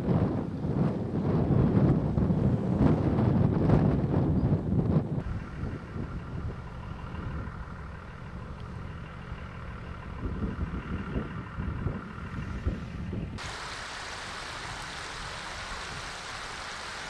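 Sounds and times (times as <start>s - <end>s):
wind buffeting microphone: 0.0s - 17.0s
vehicle engine idling: 5.2s - 17.0s
floodwater rushing: 13.4s - 17.0s.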